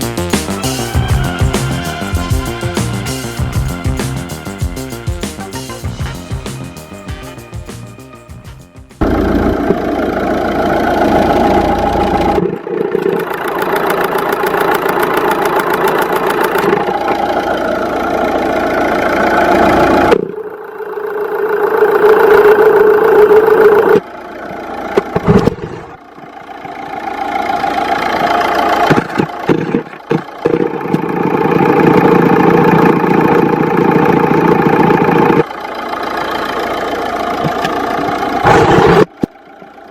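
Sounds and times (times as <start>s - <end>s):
car engine running: 8.9s - 39.9s
short knocks and scrapes: 25.0s - 26.0s.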